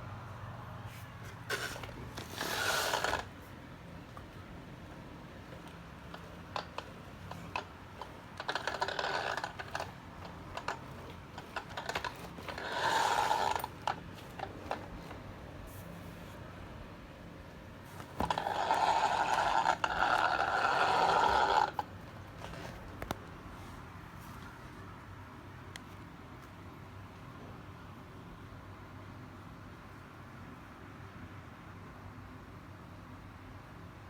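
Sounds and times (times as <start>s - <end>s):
packaging rustling: 1.3s - 16.2s.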